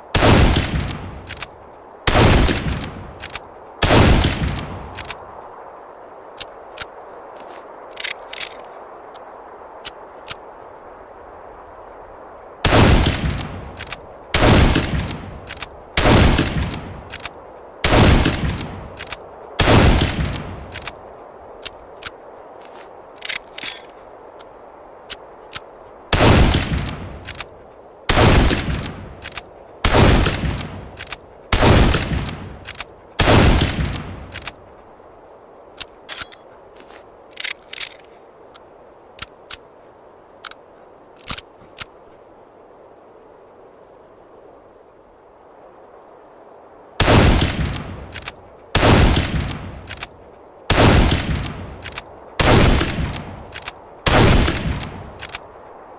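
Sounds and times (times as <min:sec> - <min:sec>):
small metallic clicks: 0:00.8 - 0:01.6, 0:02.5 - 0:03.5, 0:04.5 - 0:05.2, 0:06.4 - 0:10.4, 0:13.1 - 0:14.1, 0:16.5 - 0:17.4, 0:18.3 - 0:19.3, 0:20.0 - 0:21.0, 0:21.6 - 0:25.7, 0:26.5 - 0:27.6, 0:28.8 - 0:29.5, 0:30.2 - 0:31.3, 0:31.9 - 0:33.0, 0:33.6 - 0:34.6, 0:35.8 - 0:39.7, 0:41.2 - 0:42.0, 0:47.4 - 0:48.4, 0:49.2 - 0:50.2, 0:51.2 - 0:52.1, 0:52.8 - 0:53.8, 0:54.5 - 0:55.6
rifle shots with echo: 0:31.5 - 0:34.4, 0:50.7 - 0:53.3, 0:54.1 - 0:55.0
rifle bolt clicking: 0:37.3 - 0:38.1.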